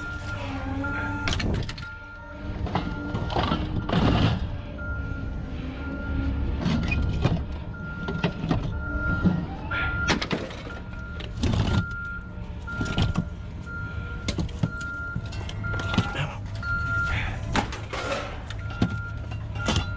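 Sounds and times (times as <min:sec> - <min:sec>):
low engine rumble: 0:00.0 - 0:19.9
reversing alarm beeping: 0:00.0 - 0:19.9
sharp clanks and knocks: 0:17.5 - 0:19.9.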